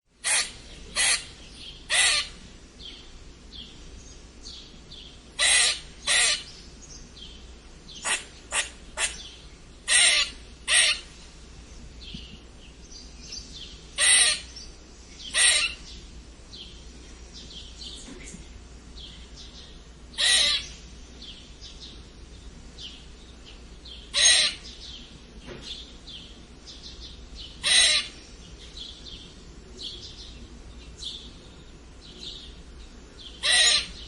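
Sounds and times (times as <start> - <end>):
squirrel rasping squeaks: 0.2 - 1.3, 1.9 - 2.4, 5.4 - 6.5, 8.0 - 9.3, 9.9 - 11.1, 14.0 - 14.5, 15.3 - 15.8, 20.2 - 20.7, 24.2 - 24.6, 27.6 - 28.2, 33.4 - 34.0
faint short animal calls: 20.2 - 20.7, 33.4 - 34.0.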